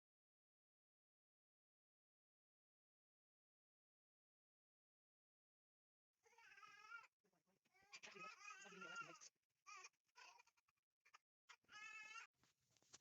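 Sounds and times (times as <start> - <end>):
animal high-pitched cries: 7.8 - 9.9.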